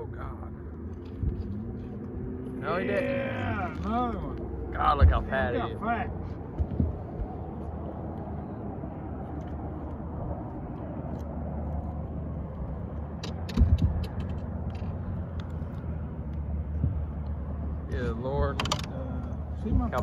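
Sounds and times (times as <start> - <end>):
boat motor humming: 0.0 - 20.0
sharp knocks with heavy thump: 13.5 - 14.2.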